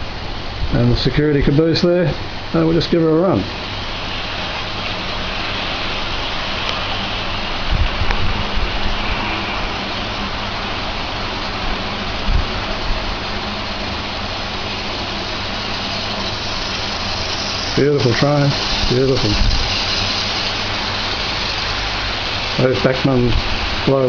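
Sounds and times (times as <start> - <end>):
model train running on track: 12.6 - 24.0.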